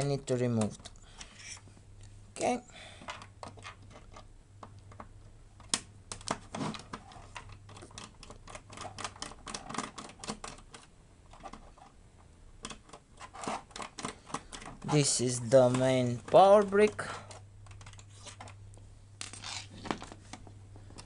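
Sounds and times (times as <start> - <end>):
plastic and metal parts clicking: 3.0 - 11.9, 12.6 - 18.6.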